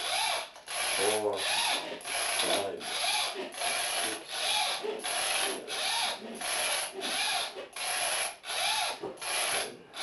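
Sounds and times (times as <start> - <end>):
ratcheting winding mechanism whirr: 0.0 - 10.0.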